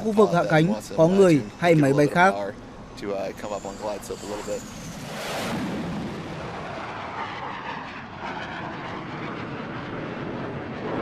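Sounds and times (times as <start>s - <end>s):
jet engine rushing: 0.0s - 11.0s.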